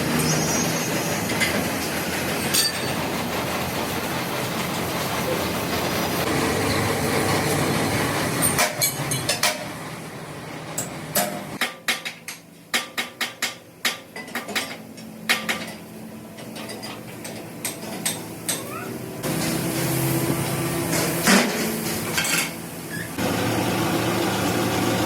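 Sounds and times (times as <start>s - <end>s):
steady machine hum: 0.0s - 11.6s, 22.6s - 25.0s
metal parts clanking: 8.4s - 9.7s.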